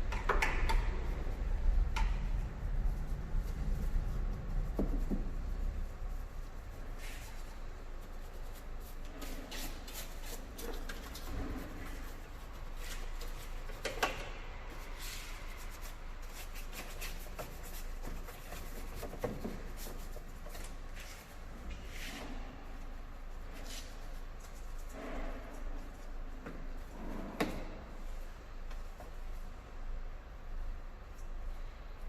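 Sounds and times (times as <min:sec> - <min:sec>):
brush rubbing and scraping: 0:01.0 - 0:27.3.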